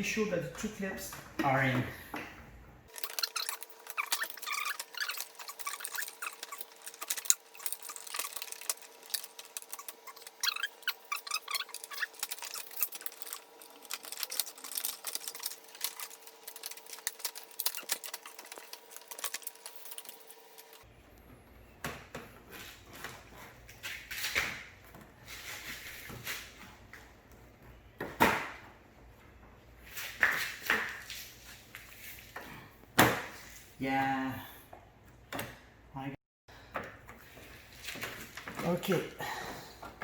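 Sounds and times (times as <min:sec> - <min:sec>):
plastic clips clicking and rattling: 0:02.9 - 0:20.8.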